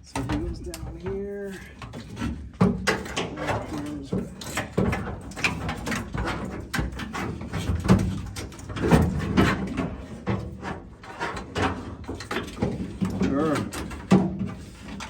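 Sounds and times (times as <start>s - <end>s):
wires rustling: 0.0s - 8.8s.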